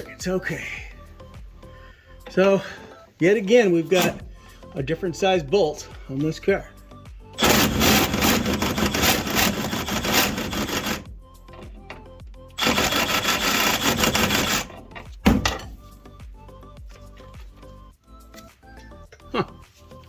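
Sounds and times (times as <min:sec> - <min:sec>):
scraping rust off a bolt head: 0:03.9 - 0:04.5, 0:07.4 - 0:11.0, 0:12.6 - 0:15.9
sharp knock: 0:15.2 - 0:15.8.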